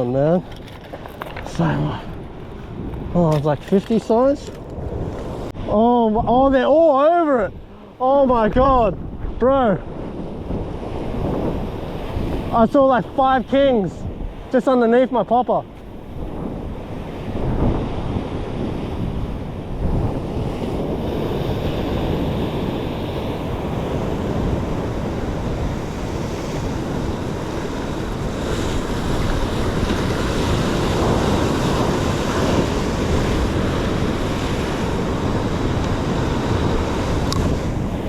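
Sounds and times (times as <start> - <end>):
wind buffeting microphone: 0.0 - 38.0
sea washing over rocky shore: 16.1 - 38.0.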